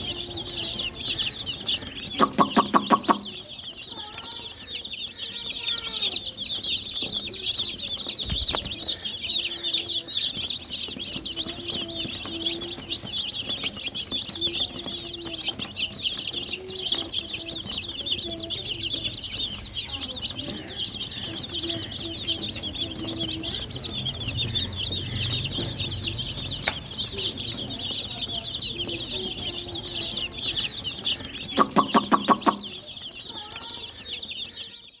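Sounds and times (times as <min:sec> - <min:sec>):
baby chicks peeping: 0:00.0 - 0:35.0
hen clucking softly: 0:02.2 - 0:03.4, 0:31.5 - 0:32.8
loud rapid pulses: 0:02.2 - 0:03.4, 0:31.6 - 0:32.8.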